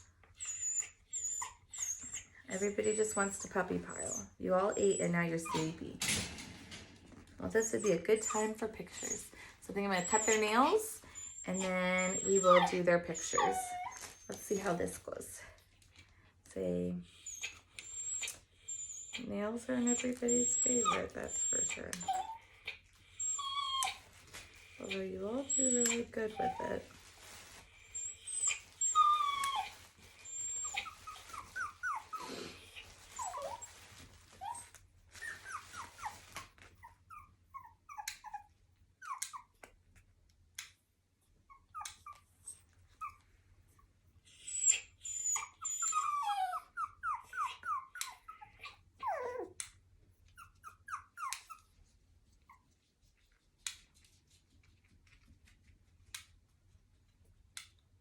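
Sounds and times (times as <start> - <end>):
puppy whining and yelping: 0.0 - 6.3, 10.0 - 14.7, 17.0 - 19.2, 19.8 - 40.0, 41.4 - 52.8.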